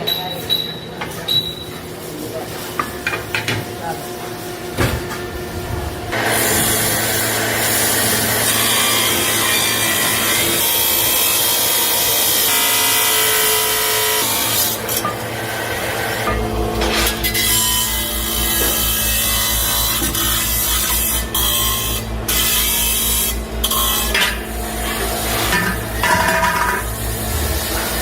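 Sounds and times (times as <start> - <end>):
low factory hum: 0.0 - 28.0
power tool grinding steel: 6.1 - 28.0.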